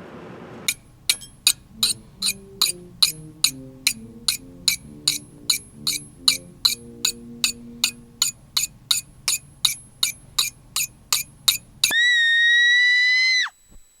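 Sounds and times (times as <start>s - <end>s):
musical notes: 0.7s - 11.8s
sharp evenly spaced clicks: 0.7s - 12.0s.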